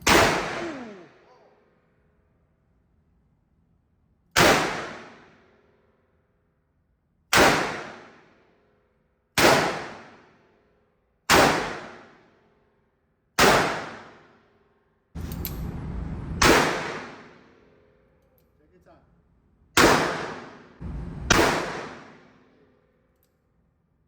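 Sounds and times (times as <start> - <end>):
gunshots with ringing echo: 0.0 - 1.2, 16.4 - 17.4, 19.8 - 22.5.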